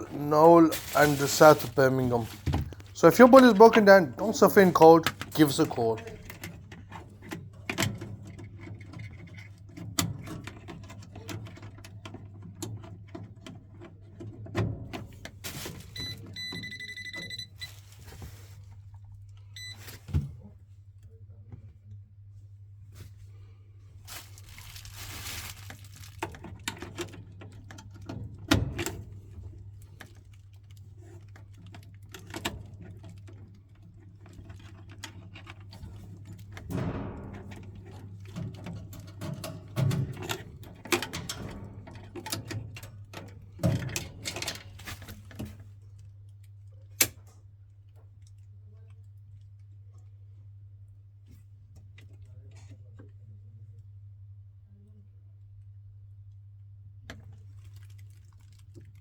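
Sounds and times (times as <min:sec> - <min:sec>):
tools and parts clattering: 0:00.0 - 0:18.4, 0:24.1 - 0:30.1, 0:31.0 - 0:45.6.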